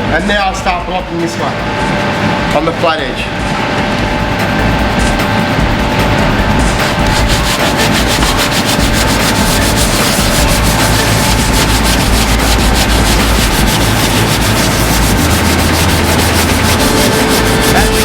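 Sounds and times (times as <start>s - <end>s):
sandpaper scraping filler: 6.7s - 18.0s.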